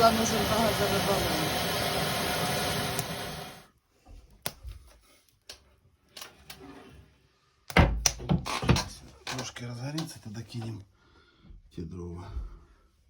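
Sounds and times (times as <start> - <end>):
gas burner hissing: 0.0 - 3.7.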